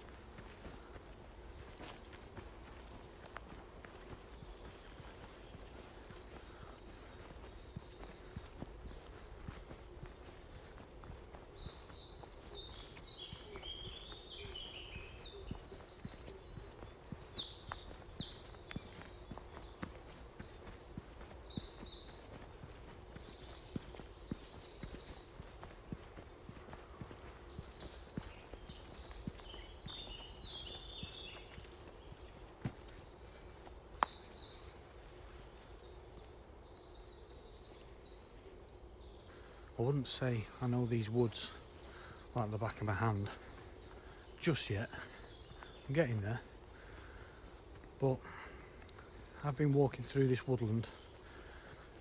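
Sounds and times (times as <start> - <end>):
soft footsteps: 0.0 - 35.4
songbirds singing: 0.0 - 52.0.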